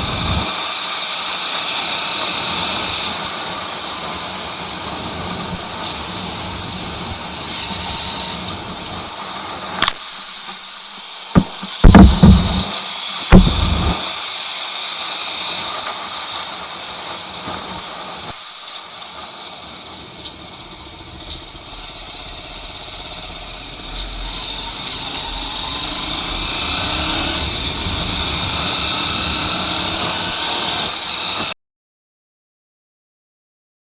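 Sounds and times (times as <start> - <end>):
motorcycle engine running: 11.4 - 14.0, 20.0 - 30.3.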